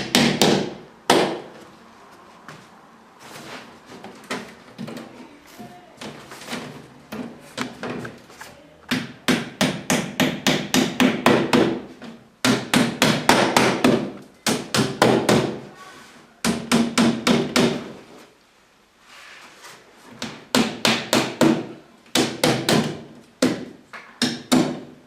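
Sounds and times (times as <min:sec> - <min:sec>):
hammer blows on wooden panels: 0:00.0 - 0:01.6, 0:08.9 - 0:15.8, 0:16.4 - 0:18.0, 0:20.2 - 0:25.0.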